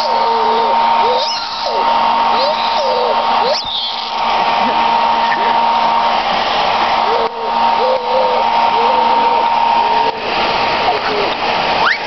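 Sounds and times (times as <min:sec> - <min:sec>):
hair dryer blowing: 0:00.0 - 0:12.0.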